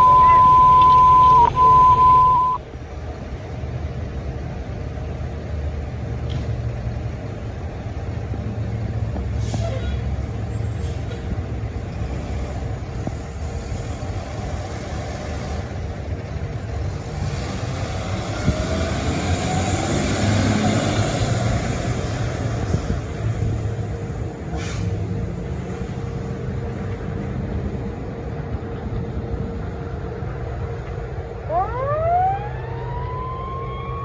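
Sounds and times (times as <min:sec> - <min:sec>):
dispatch alert tone: 0:00.0 - 0:02.6
diesel engine rumbling: 0:00.0 - 0:34.0
air brake hisses: 0:24.5 - 0:25.0.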